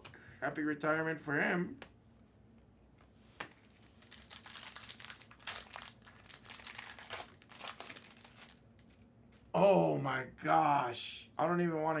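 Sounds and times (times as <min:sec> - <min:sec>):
foil wrapper crinkling: 0:03.4 - 0:09.1.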